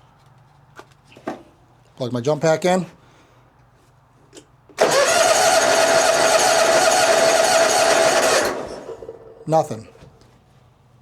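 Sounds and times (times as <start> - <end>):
electric starter cranking engine: 4.8 - 9.5.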